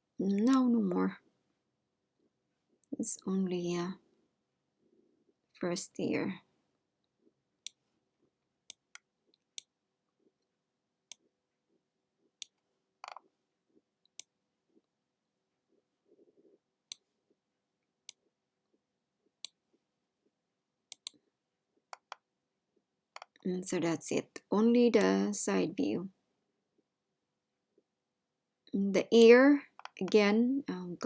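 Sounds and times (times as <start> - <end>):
computer mouse clicks: 20.9 - 21.2.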